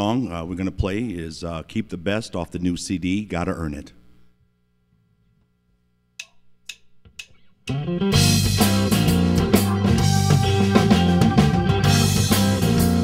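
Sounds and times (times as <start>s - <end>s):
sharp count-in clicks: 6.2s - 7.9s
blues-rock band playing: 7.7s - 13.0s.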